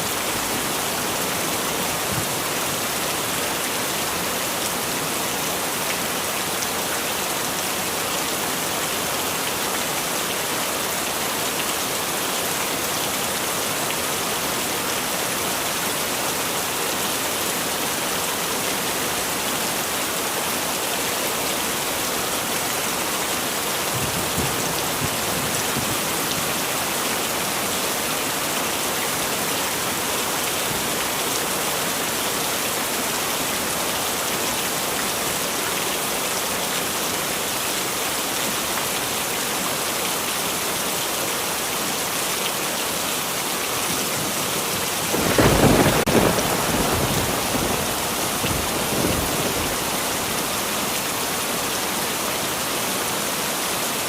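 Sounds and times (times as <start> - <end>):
heavy rain falling: 0.0 - 54.0.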